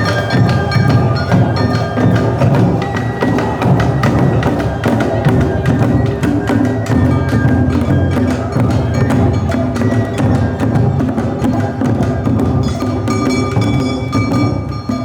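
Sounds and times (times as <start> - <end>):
metal hand gongs clanging: 0.0 - 10.5
pitched instruments playing: 0.0 - 11.4
drums beating: 0.0 - 15.0.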